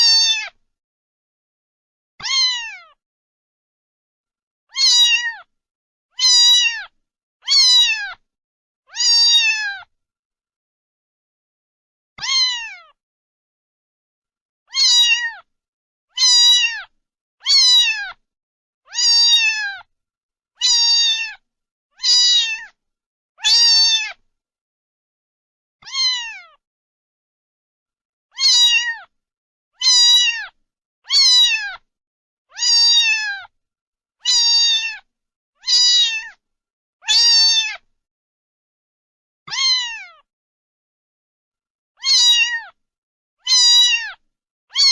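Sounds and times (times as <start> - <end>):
cat meowing: 0.0 - 0.6, 2.2 - 3.0, 4.7 - 5.5, 6.2 - 8.2, 8.9 - 9.9, 12.2 - 13.0, 14.7 - 15.5, 16.1 - 18.2, 18.9 - 19.9, 20.6 - 21.4, 22.0 - 22.8, 23.4 - 24.2, 25.8 - 26.6, 28.3 - 29.1, 29.8 - 31.8, 32.5 - 33.5, 34.2 - 36.4, 37.0 - 37.8, 39.5 - 40.3, 42.0 - 42.8, 43.4 - 44.9.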